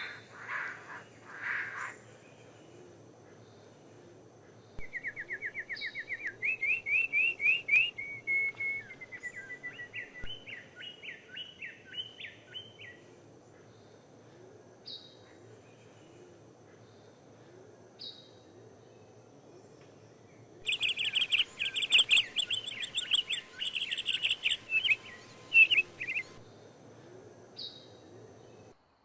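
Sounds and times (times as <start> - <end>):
songbird singing: 0.0 - 28.8.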